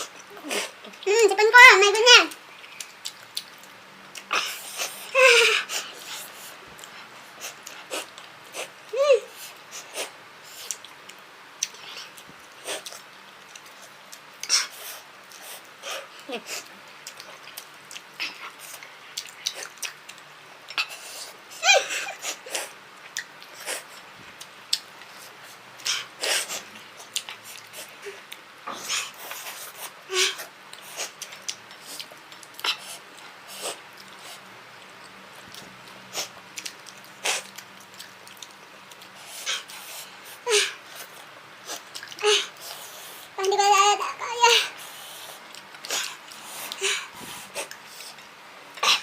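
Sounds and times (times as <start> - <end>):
person sniffing: 32.7 - 34.4.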